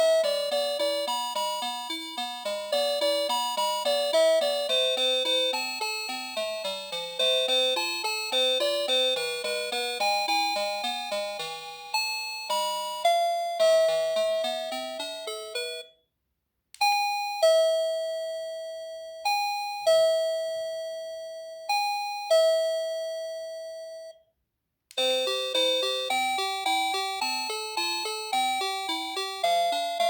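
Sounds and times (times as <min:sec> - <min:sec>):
doorbell chime melody: 0:12.5 - 0:15.9, 0:25.0 - 0:30.0.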